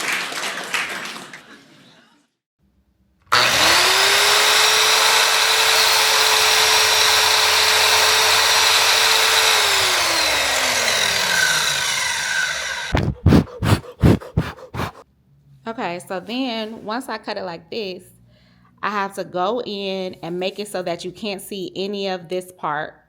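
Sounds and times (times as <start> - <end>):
power tool motor spinning: 3.3 - 15.0
short sharp bursts: 12.9 - 15.0.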